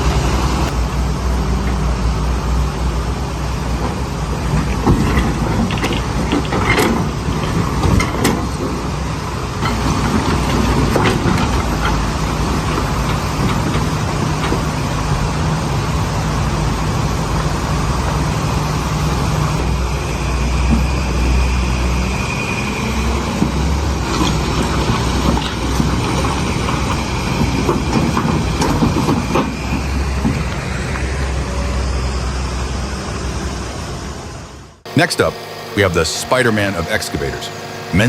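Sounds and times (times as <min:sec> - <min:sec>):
diesel engine running: 0:00.0 - 0:38.0
metal clanks and knocks: 0:03.8 - 0:15.3, 0:19.6 - 0:31.0
metal squeal: 0:19.7 - 0:30.3.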